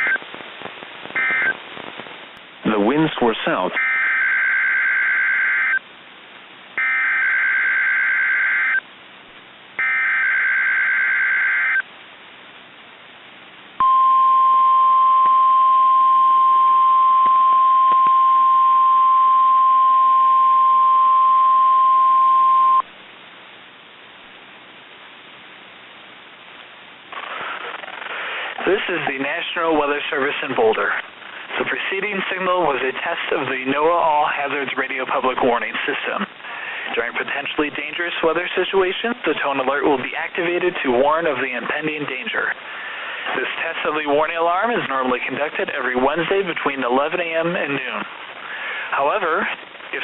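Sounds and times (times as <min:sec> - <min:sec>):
faint radio hiss: 0:00.0 - 0:50.0
steady warning alarm tone: 0:03.8 - 0:05.8, 0:06.8 - 0:08.8, 0:09.8 - 0:11.8.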